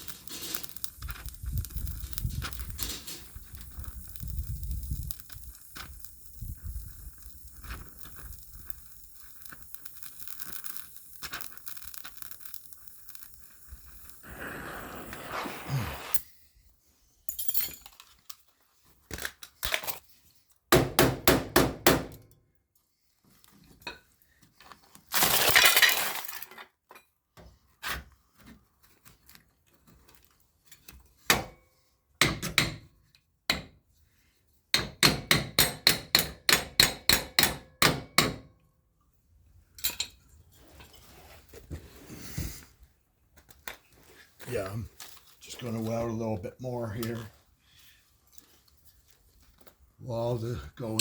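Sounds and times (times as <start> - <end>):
short rushing hiss: 14.2 - 16.2.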